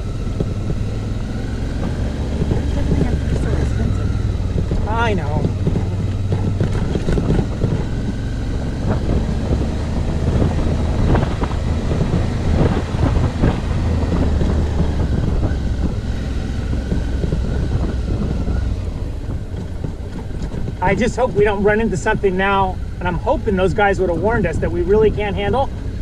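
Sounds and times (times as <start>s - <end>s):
motorcycle engine running: 0.0s - 26.0s
wind buffeting microphone: 0.0s - 26.0s
knocks and rattles from bumps: 1.7s - 21.8s.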